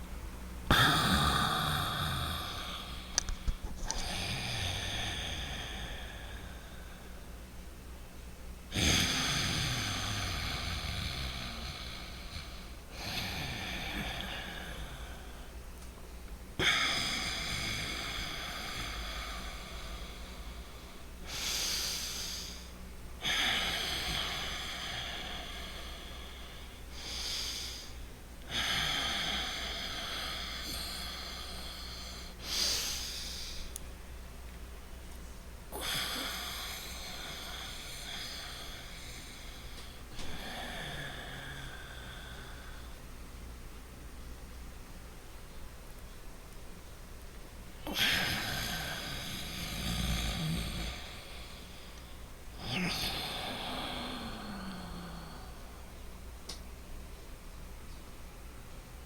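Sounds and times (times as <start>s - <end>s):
person breathing through nose: 16.6s - 33.8s.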